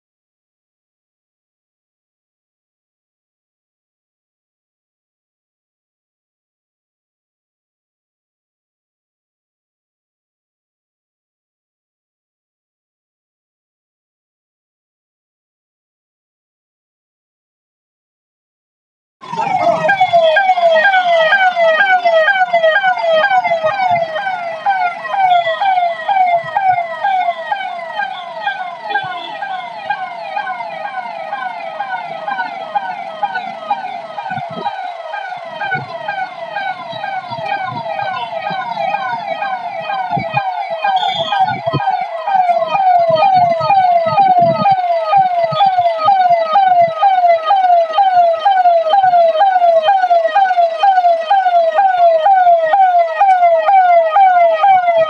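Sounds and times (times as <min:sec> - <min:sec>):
electronic siren sweeping: 0:19.2 - 0:55.0.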